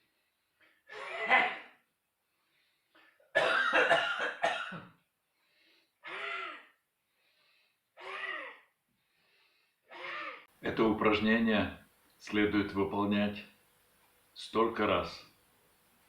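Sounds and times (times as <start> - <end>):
man coughing: 0.9 - 1.8, 3.3 - 5.0.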